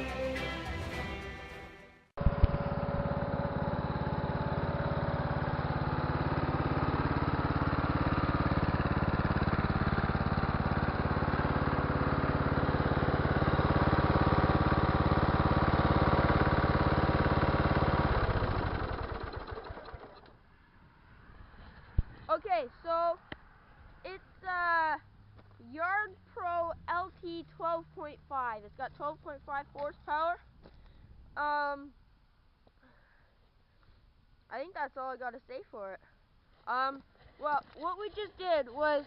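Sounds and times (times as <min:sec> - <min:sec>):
riding lawn mower engine running: 0:00.0 - 0:20.4.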